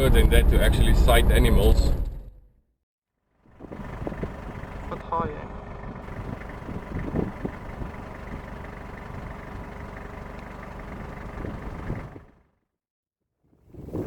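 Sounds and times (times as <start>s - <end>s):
car engine and road noise: 0.0s - 2.6s, 3.3s - 12.7s
low bumps: 3.5s - 12.4s.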